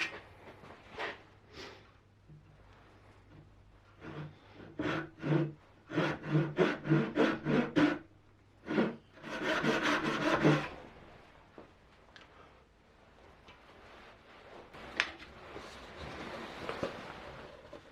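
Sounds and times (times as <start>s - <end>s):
hand tool strokes on wood: 4.0s - 8.0s, 8.7s - 10.8s.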